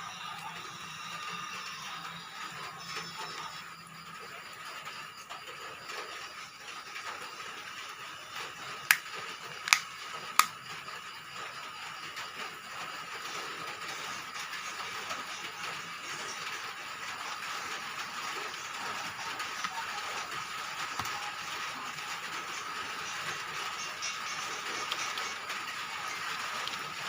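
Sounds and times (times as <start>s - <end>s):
sharp clicks: 9.7s - 10.5s.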